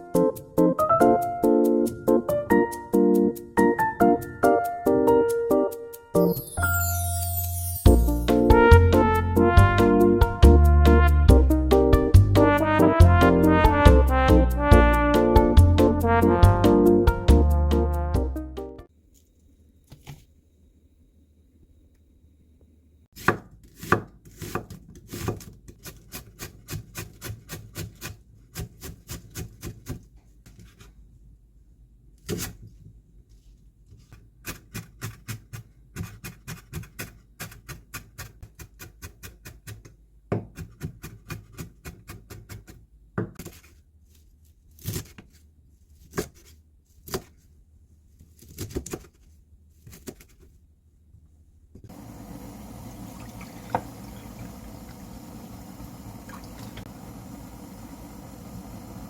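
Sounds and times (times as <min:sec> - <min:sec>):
knife chopping on cutting board: 0:23.2 - 0:30.0, 0:34.5 - 0:43.6.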